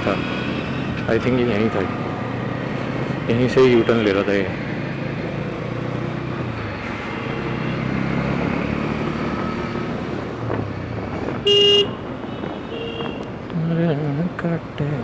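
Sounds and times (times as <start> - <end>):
road and wind noise: 0.0 - 15.0
vehicle horn blaring: 11.4 - 13.2.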